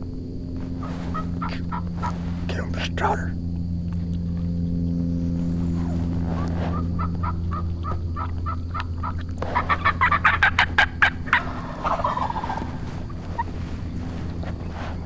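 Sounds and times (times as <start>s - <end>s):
steady low hum: 0.0s - 15.0s
turkey gobbling: 0.6s - 2.5s, 5.6s - 14.8s
wild turkey yelping: 0.6s - 3.4s, 4.9s - 15.0s.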